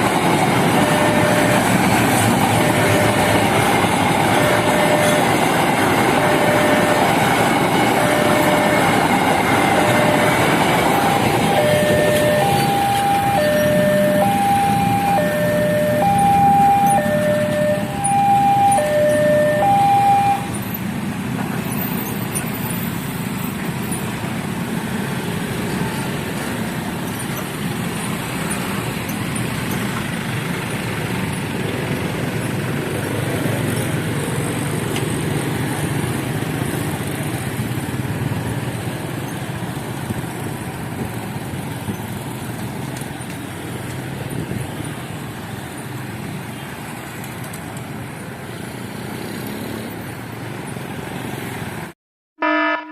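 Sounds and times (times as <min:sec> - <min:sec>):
large vehicle rumbling past: 0:00.0 - 0:39.2
horn note: 0:52.4 - 0:52.9.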